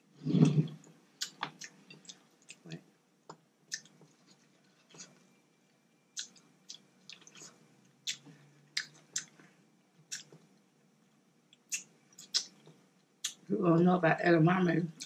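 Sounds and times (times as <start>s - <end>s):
person chewing food: 0.3s - 5.4s, 6.1s - 10.6s
wet mouth smacks: 11.7s - 13.4s.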